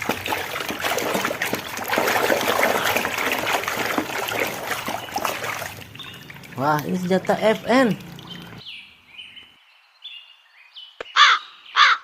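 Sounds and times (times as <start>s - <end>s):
water trickling and splashing: 0.0s - 8.6s.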